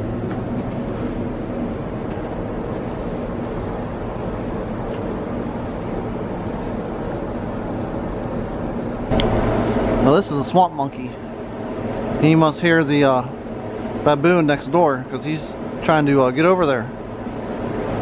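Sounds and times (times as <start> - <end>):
low mechanical hum: 0.0 - 18.0
rushing noise: 9.1 - 12.5.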